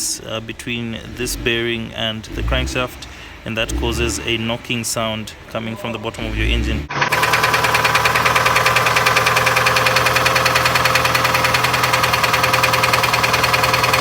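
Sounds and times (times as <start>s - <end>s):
car engine idling with knock: 0.5s - 14.0s.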